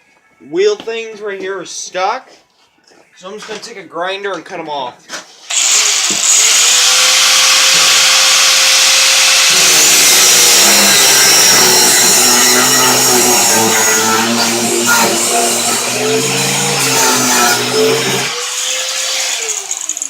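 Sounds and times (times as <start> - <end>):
angle grinder cutting metal: 5.5 - 20.0.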